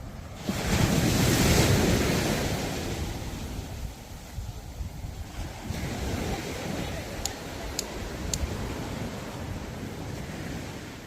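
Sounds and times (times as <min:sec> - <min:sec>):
sea surf: 0:00.0 - 0:11.0
wind on microphone: 0:00.0 - 0:11.0.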